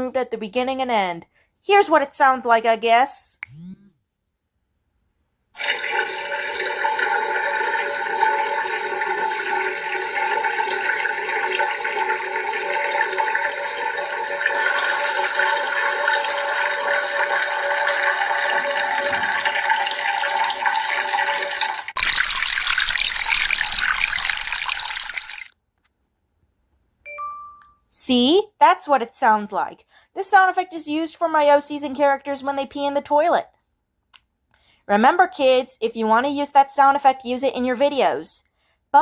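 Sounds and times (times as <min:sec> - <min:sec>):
liquid stream into toilet water: 0:05.6 - 0:25.6.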